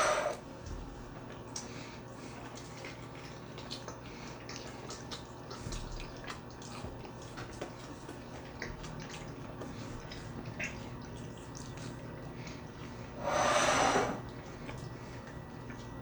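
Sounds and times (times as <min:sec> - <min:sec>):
people chewing and smacking: 0:00.3 - 0:13.2, 0:14.2 - 0:16.0
steady low hum: 0:05.7 - 0:16.0.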